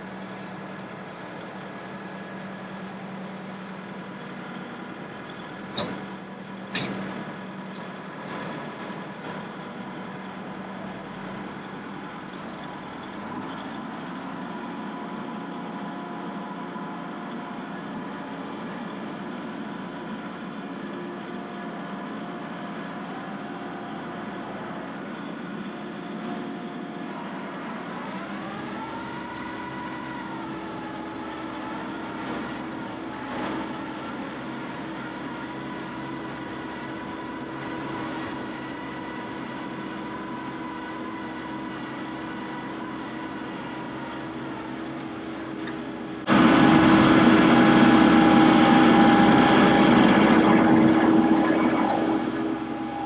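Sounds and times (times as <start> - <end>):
loud engine sound: 0.0 - 53.0
vehicle engine running: 31.6 - 53.0.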